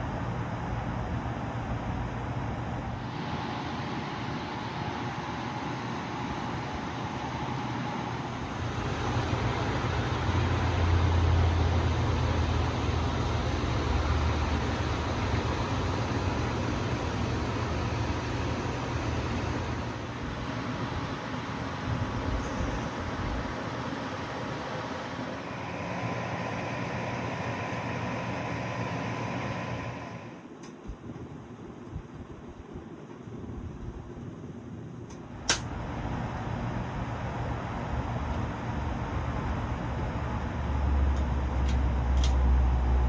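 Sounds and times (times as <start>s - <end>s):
ceiling fan rushing air: 0.0s - 43.0s
low motor hum: 6.6s - 21.2s, 35.4s - 43.0s.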